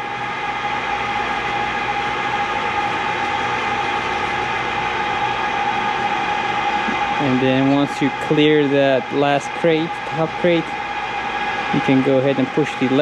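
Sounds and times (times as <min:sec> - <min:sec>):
crane hoist whining: 0:00.0 - 0:13.0
mechanical hum: 0:00.0 - 0:13.0.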